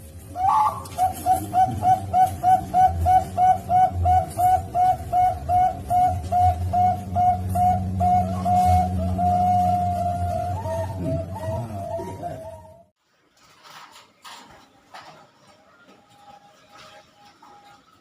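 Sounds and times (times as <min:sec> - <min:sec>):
dove cooing: 0:00.3 - 0:12.9.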